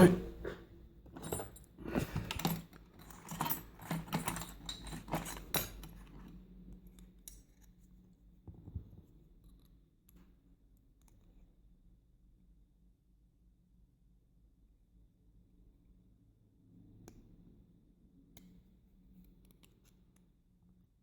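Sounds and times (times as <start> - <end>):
small metal clicks of lock parts: 1.2 - 7.8.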